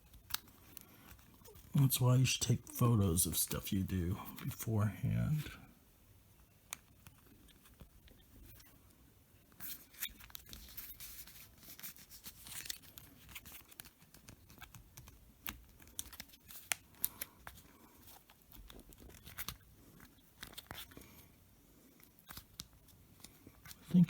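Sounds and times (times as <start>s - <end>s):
small laptop parts clicking: 12.6s - 17.6s.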